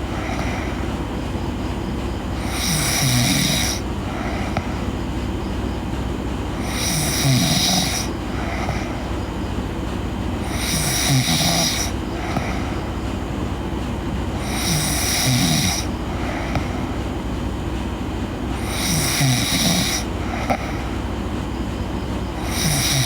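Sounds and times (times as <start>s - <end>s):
girl snoring: 0.0s - 0.8s, 2.4s - 4.7s, 6.6s - 9.1s, 10.4s - 12.8s, 14.4s - 16.9s, 18.6s - 20.9s, 22.4s - 23.0s
steady low hum: 0.0s - 23.0s.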